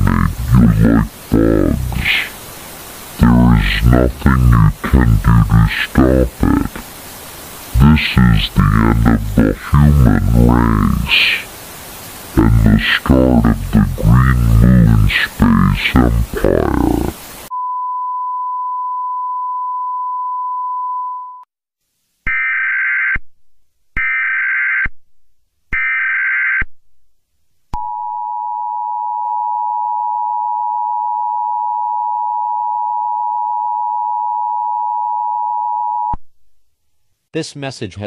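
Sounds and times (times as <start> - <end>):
steady single tone: 17.5 - 21.4.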